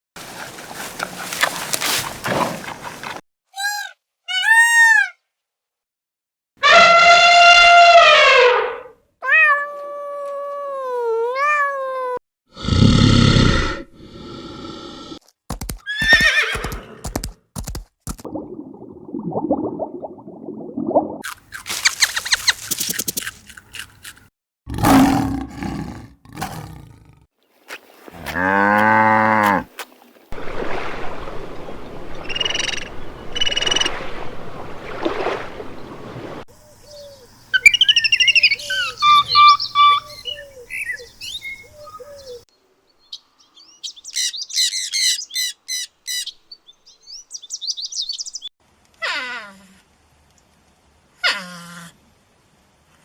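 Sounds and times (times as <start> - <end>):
rapid bird chirps and trills: 21.7 - 23.2, 36.6 - 48.5.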